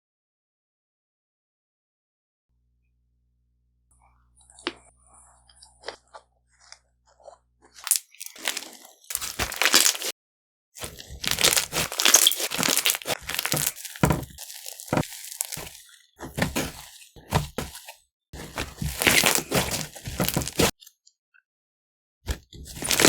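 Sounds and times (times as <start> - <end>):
slime crunchy crackling: 7.7 - 10.1, 10.8 - 20.8, 22.7 - 23.0.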